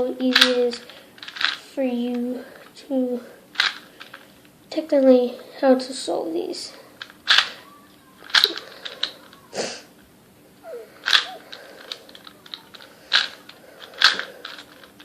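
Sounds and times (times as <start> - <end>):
plastic puzzle cube clacking: 0.2 - 2.2, 3.6 - 4.3, 7.0 - 9.5, 11.0 - 15.0.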